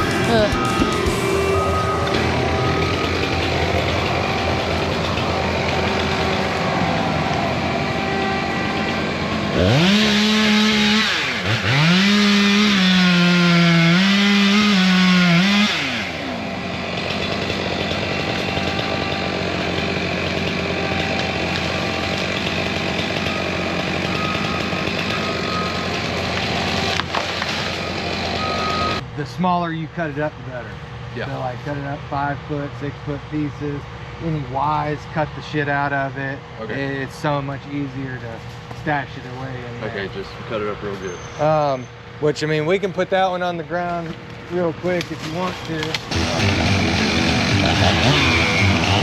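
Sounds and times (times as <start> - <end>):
chainsaw revving: 0.0 - 29.0, 43.9 - 49.0
engine running steadily: 0.0 - 49.0.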